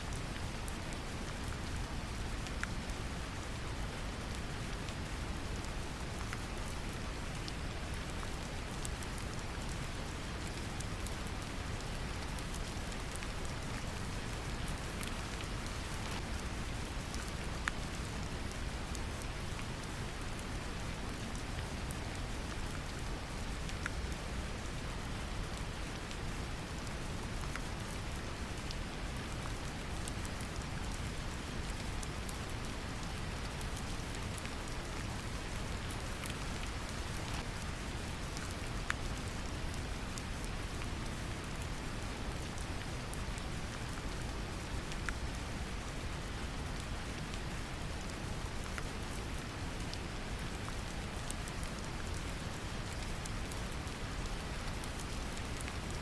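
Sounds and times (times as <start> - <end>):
gentle rain: 0.0 - 56.0.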